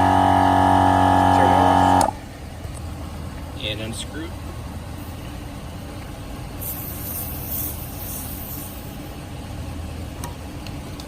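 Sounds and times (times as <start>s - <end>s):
low mechanical hum: 0.0s - 11.0s
air hissing from tyre valve: 6.6s - 9.1s.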